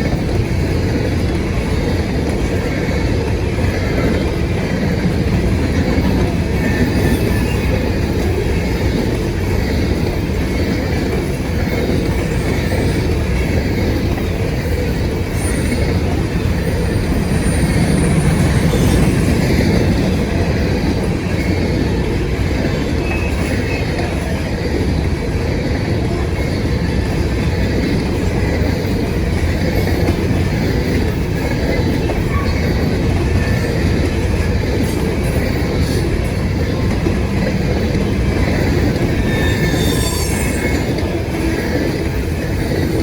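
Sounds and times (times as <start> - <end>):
freight train wheels rumbling on rail: 0.0 - 43.0
high wheel squeals: 6.4 - 8.3, 11.6 - 20.8, 37.8 - 43.0.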